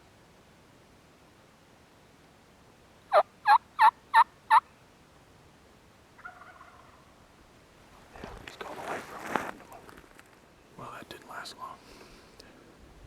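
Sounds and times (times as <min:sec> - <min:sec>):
turkey yelps: 0:03.1 - 0:04.6, 0:06.2 - 0:07.1
faint turkey-like call: 0:03.1 - 0:04.7, 0:06.2 - 0:07.3.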